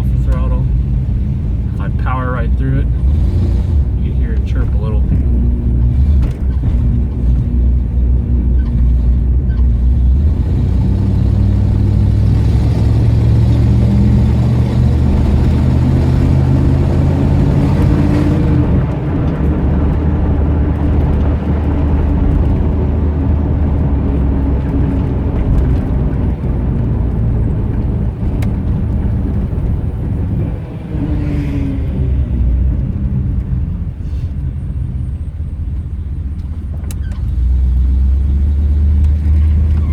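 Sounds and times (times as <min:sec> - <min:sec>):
car engine revving: 0:00.0 - 0:39.9.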